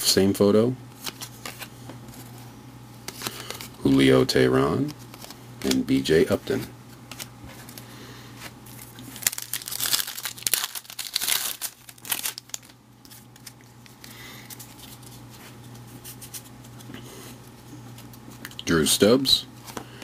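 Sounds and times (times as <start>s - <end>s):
wrapper handling noise: 7.1s - 16.8s
foil wrapper crinkling and tearing: 8.7s - 15.0s.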